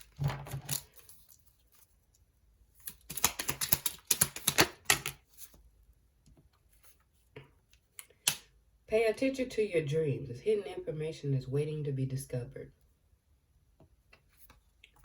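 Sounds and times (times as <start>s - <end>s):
cards being shuffled: 0.0s - 2.0s, 2.8s - 5.6s.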